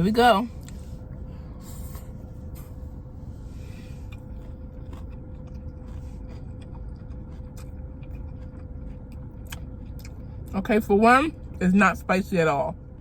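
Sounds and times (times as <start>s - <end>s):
low hum inside car: 0.0s - 13.0s
person chewing: 0.5s - 10.5s.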